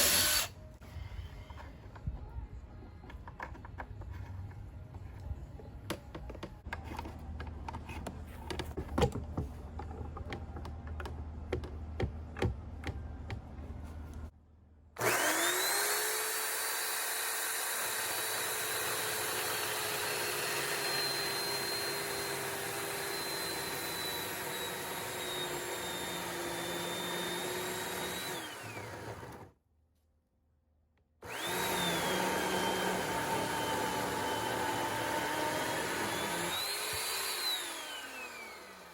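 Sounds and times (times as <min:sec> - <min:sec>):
electric chainsaw motor whining: 0:00.0 - 0:00.5, 0:15.0 - 0:29.5, 0:31.2 - 0:38.9.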